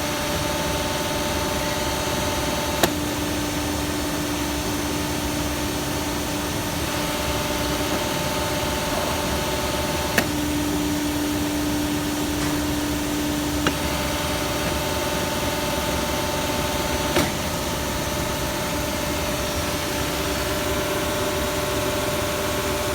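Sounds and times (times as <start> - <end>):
machine running steadily: 0.0 - 22.9
sharp click: 17.1 - 17.4.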